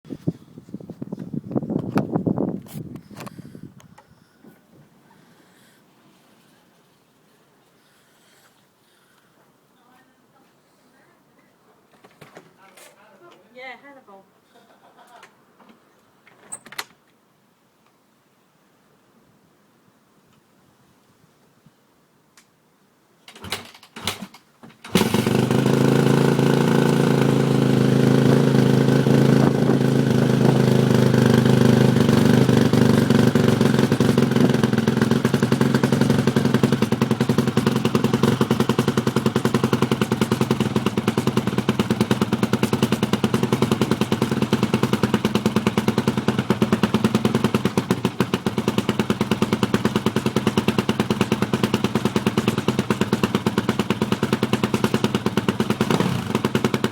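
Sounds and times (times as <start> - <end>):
motorcycle engine starting and idling: 23.2 - 56.9.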